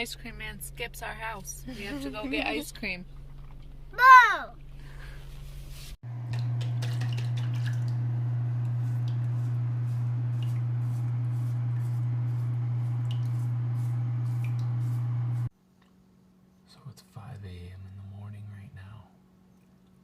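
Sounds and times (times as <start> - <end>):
faint ticks and drips: 13.0 - 13.4, 19.6 - 20.0.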